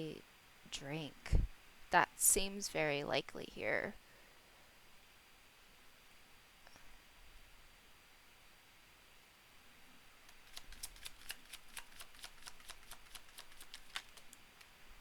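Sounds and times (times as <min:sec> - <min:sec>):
cards being shuffled: 0:10.3 - 0:14.4.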